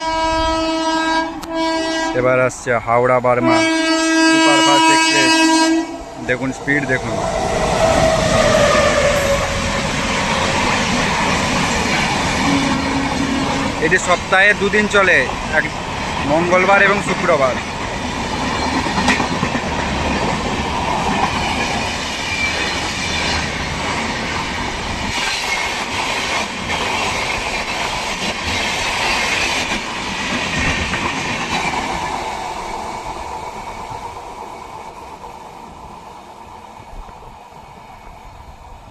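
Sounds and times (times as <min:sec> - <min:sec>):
train wheels clattering over rail joints: 0:09.0 - 0:35.6.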